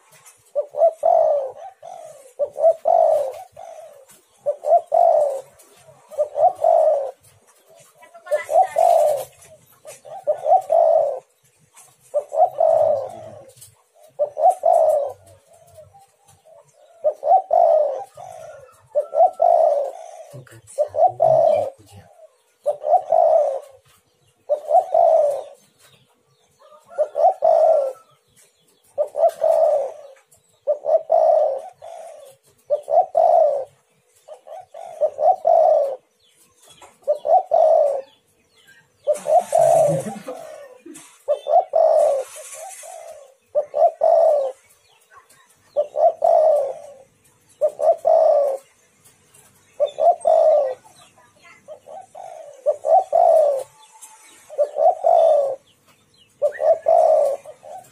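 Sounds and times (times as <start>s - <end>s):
dove cooing: 0.0s - 57.9s
brief hissing noises: 42.0s - 43.2s.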